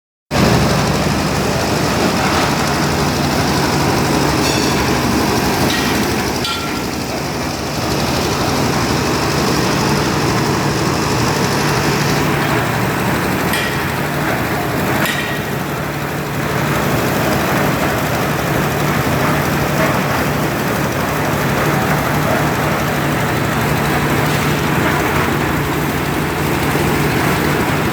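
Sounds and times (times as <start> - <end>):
concrete mixer rattling: 0.3 - 27.9
metal clanks: 1.9 - 7.3, 12.4 - 15.7.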